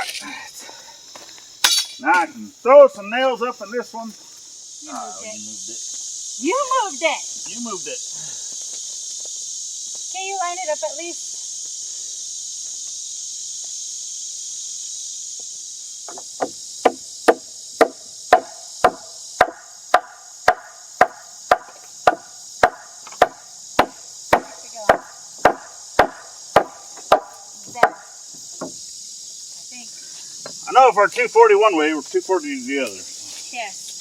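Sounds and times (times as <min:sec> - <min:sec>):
insects hissing: 0:00.0 - 0:34.0
hammer striking nails: 0:16.1 - 0:28.0.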